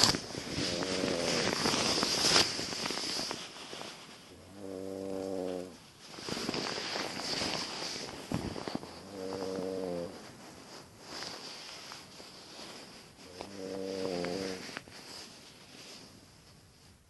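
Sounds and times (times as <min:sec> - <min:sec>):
snoring: 0:00.6 - 0:01.7, 0:04.4 - 0:05.8, 0:09.0 - 0:10.2, 0:13.2 - 0:14.7.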